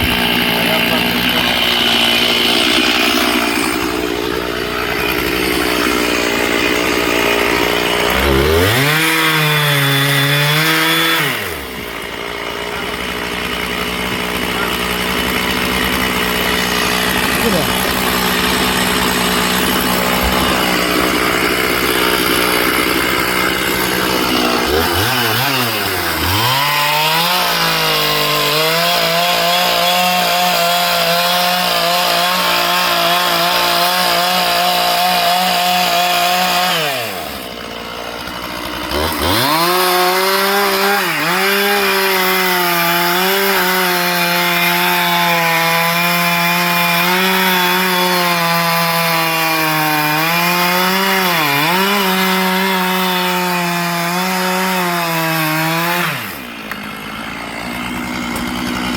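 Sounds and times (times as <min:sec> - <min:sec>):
chainsaw cutting wood: 0:00.0 - 0:58.9.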